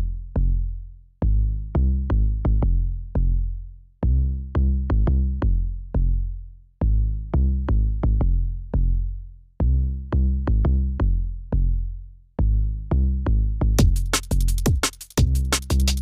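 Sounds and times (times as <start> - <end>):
trap drum machine beat: 13.8 - 16.0.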